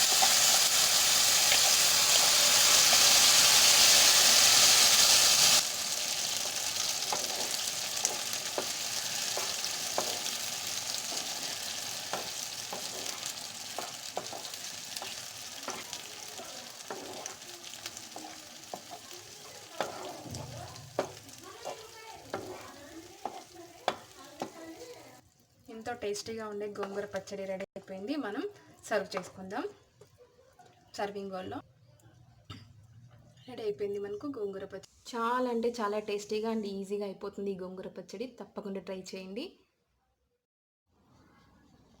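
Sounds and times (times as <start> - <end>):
hot oil sizzling: 0.0 - 27.4
spoon stirring and scraping pan: 1.5 - 25.2, 26.5 - 27.5.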